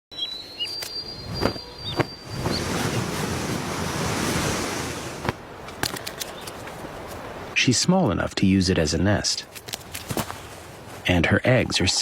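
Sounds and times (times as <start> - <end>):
rushing wind-like noise: 1.2 - 7.6.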